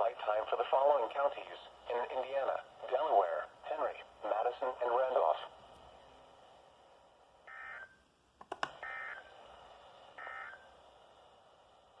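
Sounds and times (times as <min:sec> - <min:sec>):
sharp clicks: 0:08.4 - 0:08.8.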